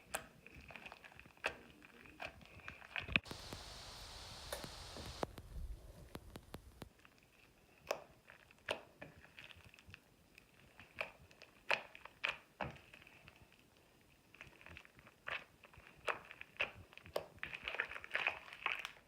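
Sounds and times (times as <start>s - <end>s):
bath product popping and crackling: 0.0s - 19.0s.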